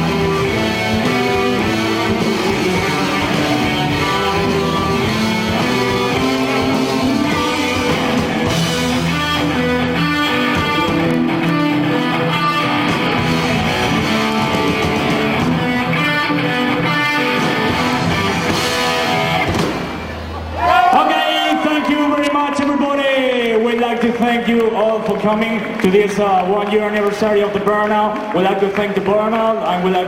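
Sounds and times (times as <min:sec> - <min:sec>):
rock band playing: 0:00.0 - 0:20.5.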